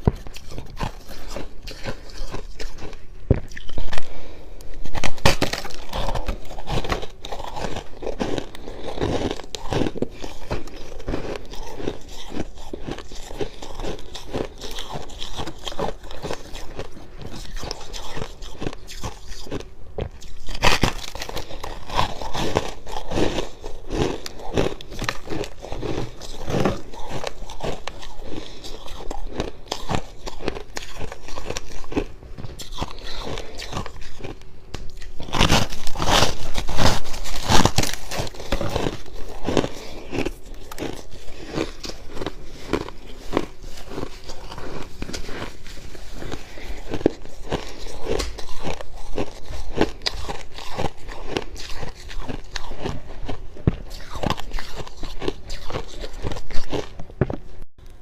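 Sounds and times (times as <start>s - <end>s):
crunching and chewing frost: 0.0s - 58.0s.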